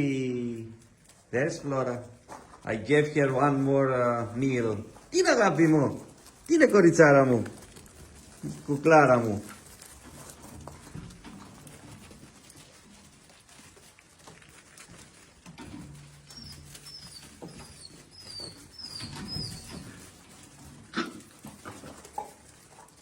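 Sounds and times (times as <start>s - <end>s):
dogs moving and feeding: 0.0s - 23.0s
short high falling squeaks: 16.4s - 20.0s.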